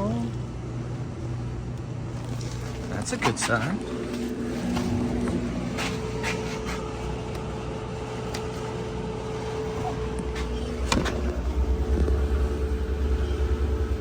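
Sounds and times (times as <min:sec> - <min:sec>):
clothes dryer running: 0:00.0 - 0:14.0
refrigerator compressor hum: 0:00.0 - 0:14.0
heavy low throb: 0:08.8 - 0:14.0.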